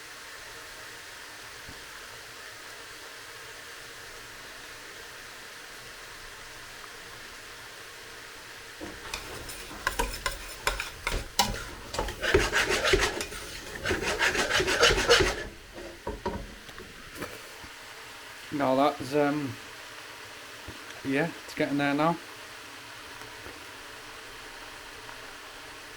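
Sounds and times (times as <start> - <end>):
vegetables frying hiss: 0.0 - 25.9
utensil scraping a pan: 8.8 - 17.4.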